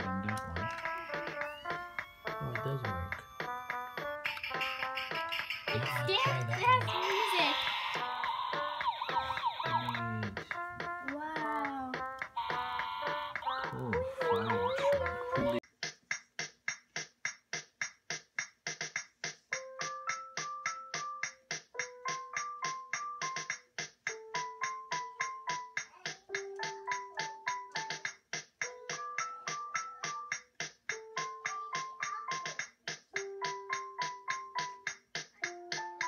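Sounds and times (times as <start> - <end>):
electronic keyboard tune: 0.0 - 15.6, 28.7 - 30.4
ticking beat: 0.0 - 36.0.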